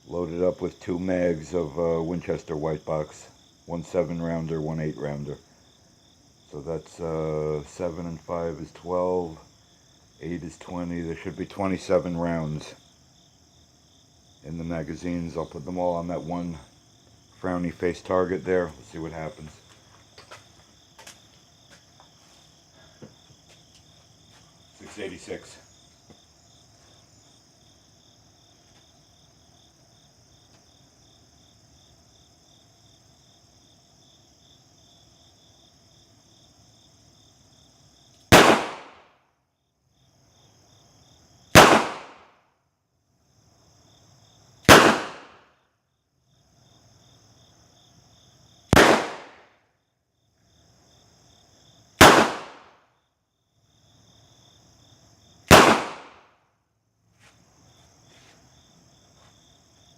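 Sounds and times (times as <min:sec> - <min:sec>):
crickets chirping: 0:00.0 - 0:59.9
revolver shots: 0:38.3 - 0:39.0, 0:41.6 - 0:42.3, 0:44.7 - 0:45.4, 0:48.8 - 0:49.4, 0:52.0 - 0:52.7, 0:55.5 - 0:56.2.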